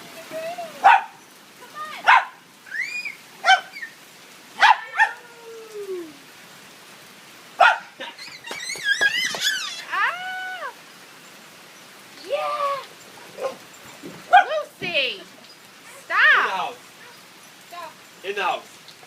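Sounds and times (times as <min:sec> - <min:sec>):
dog barking: 0:00.8 - 0:01.2, 0:02.0 - 0:02.4, 0:03.4 - 0:03.7, 0:04.6 - 0:05.2, 0:07.6 - 0:08.0, 0:13.2 - 0:13.6, 0:14.3 - 0:14.6
dog howling: 0:04.6 - 0:06.2
dog whining and yipping: 0:07.6 - 0:09.9.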